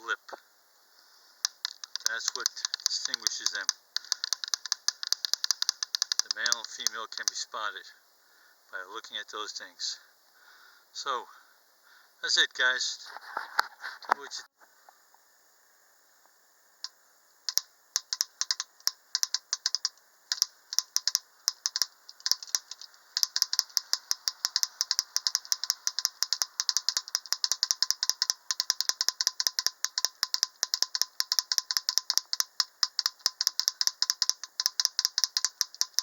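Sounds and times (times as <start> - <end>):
mechanical beak tapping metal: 1.4 - 7.4, 17.5 - 36.0.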